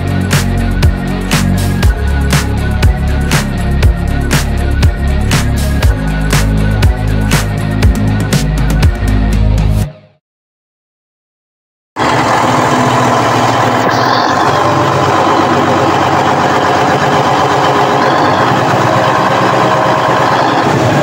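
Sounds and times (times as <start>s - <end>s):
diesel engine running: 0.0s - 9.2s, 12.0s - 21.0s
steady whine: 12.0s - 21.0s.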